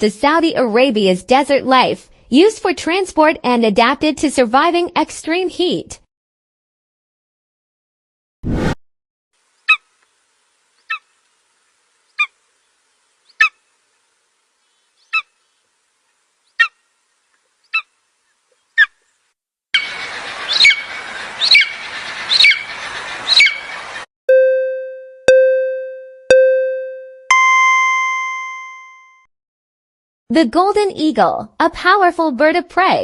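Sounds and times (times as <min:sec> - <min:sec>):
eagle yelping calls: 0:09.6 - 0:09.9, 0:13.3 - 0:13.6, 0:15.0 - 0:15.4, 0:16.6 - 0:16.8, 0:17.7 - 0:17.9, 0:19.8 - 0:23.8.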